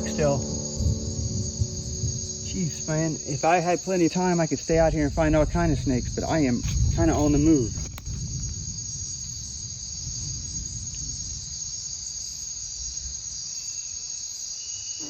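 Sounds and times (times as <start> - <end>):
low rumble: 0.0 - 11.7
insects shrill droning: 0.0 - 15.0.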